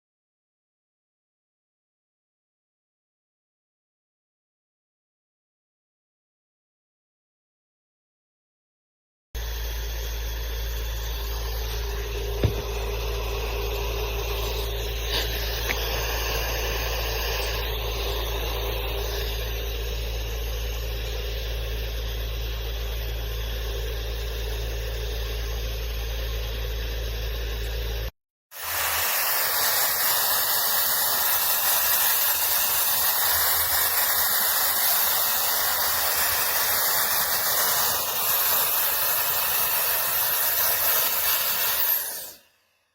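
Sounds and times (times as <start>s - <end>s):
pet hair dryer motor hum: 9.4s - 42.8s
rush of blowing air: 11.9s - 19.6s.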